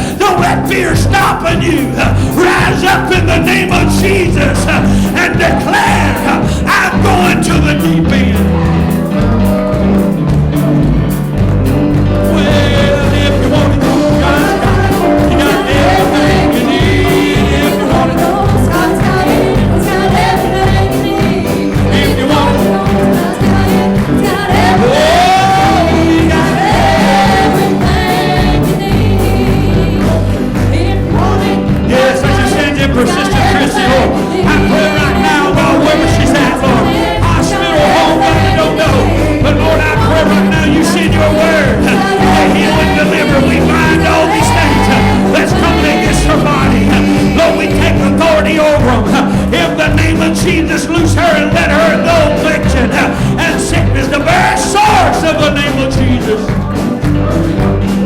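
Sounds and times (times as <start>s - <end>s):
gospel singing: 0.0s - 58.0s
steady bass line: 0.0s - 58.0s.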